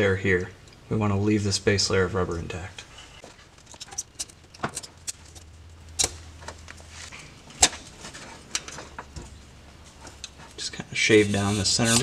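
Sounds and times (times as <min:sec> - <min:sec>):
blade trimming rubber: 0:11.2 - 0:12.0.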